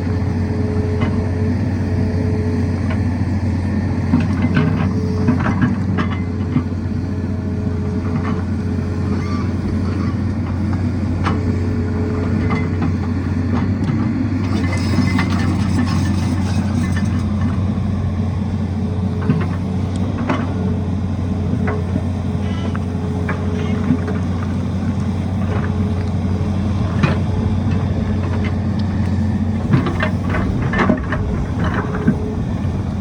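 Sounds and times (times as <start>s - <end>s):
excavator diesel engine running: 0.0s - 33.0s
knocks and clatter: 29.6s - 32.2s.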